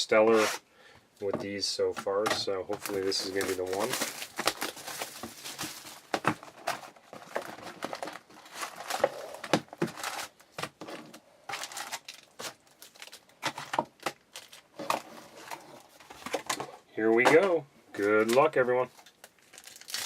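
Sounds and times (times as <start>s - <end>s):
plastic wrapping crinkling and tearing: 2.7s - 16.6s, 18.2s - 20.0s.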